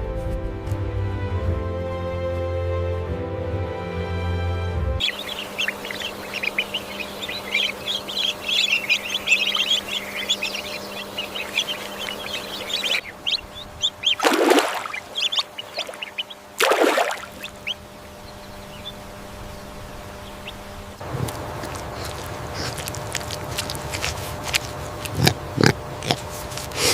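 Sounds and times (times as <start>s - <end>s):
faint hum: 4.8s - 26.9s
loud drawn-out bird calls: 5.0s - 20.9s
small birds chirping: 5.0s - 26.9s.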